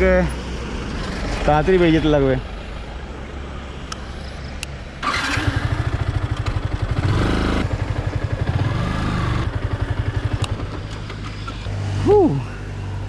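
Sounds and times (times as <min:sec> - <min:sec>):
motorcycle engine revving: 0:05.0 - 0:13.0.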